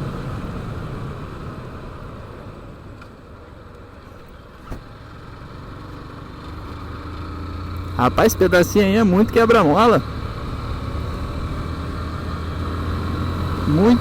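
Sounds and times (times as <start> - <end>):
road noise: 0.0 - 14.0
motorcycle engine: 4.4 - 14.0.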